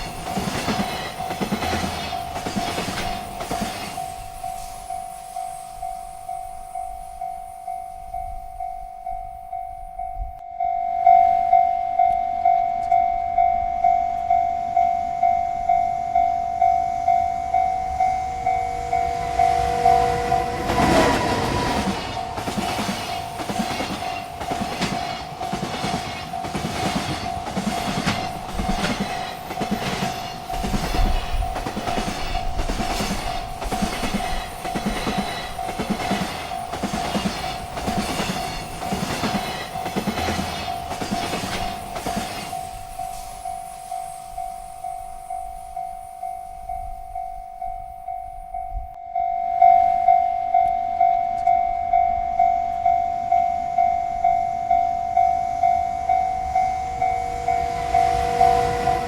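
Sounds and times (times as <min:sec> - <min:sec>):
train wheels clickety-clack: 0:00.0 - 0:08.6, 0:17.9 - 0:47.2
freight train rushing: 0:00.0 - 0:59.0
railroad crossing bell ringing: 0:00.0 - 0:59.0.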